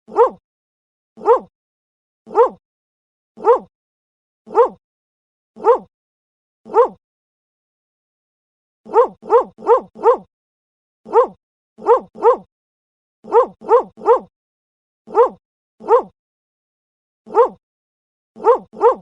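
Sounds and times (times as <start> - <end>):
dog barking: 0.1 - 0.4, 1.2 - 1.5, 2.3 - 2.6, 3.4 - 3.7, 4.5 - 4.8, 5.6 - 5.9, 6.7 - 7.0, 8.9 - 10.3, 11.1 - 12.5, 13.2 - 14.3, 15.1 - 16.2, 17.3 - 17.6, 18.4 - 19.0.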